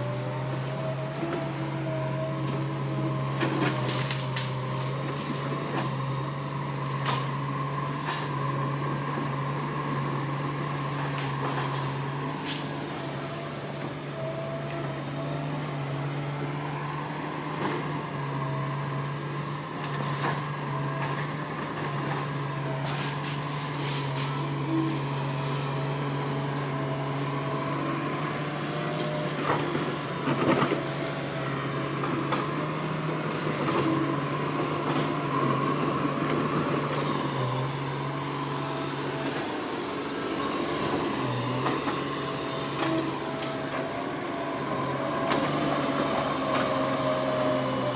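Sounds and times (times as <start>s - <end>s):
diesel engine running: 0.0s - 47.9s.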